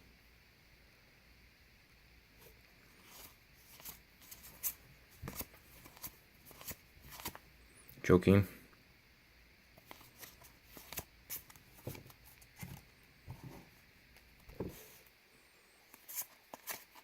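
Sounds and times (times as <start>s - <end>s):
trading cards rustling and clicking: 3.0s - 7.4s, 9.8s - 13.5s, 15.9s - 17.0s.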